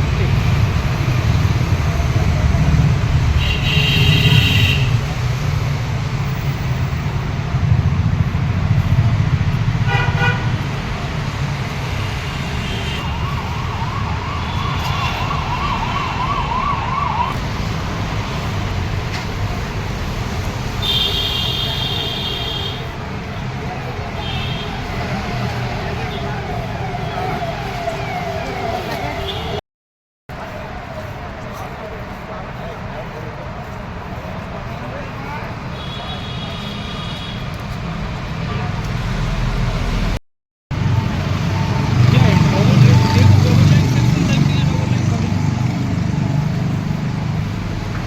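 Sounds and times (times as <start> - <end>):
traffic engine rumble: 0.0 - 29.6, 30.3 - 48.0
horn blasts: 3.3 - 5.1, 9.8 - 10.7, 20.8 - 22.9, 24.1 - 29.6
siren warbling: 13.0 - 17.4, 24.6 - 29.6.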